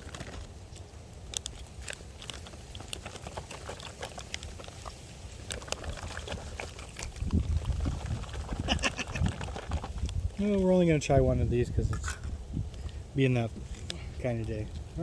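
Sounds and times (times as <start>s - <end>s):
plastic pouch rustling: 0.0s - 0.8s.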